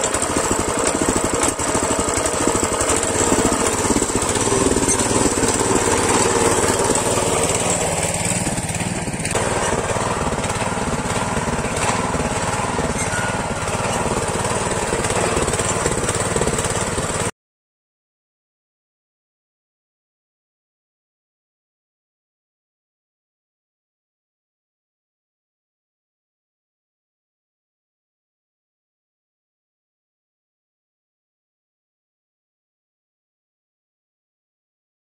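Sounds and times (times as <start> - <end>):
small tiller engine running: 0.0 - 17.3.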